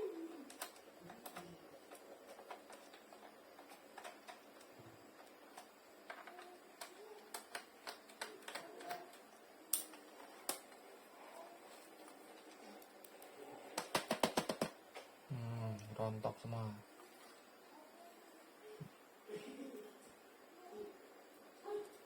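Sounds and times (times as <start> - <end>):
plastic laptop parts clicking: 0.5 - 10.8, 13.8 - 15.1.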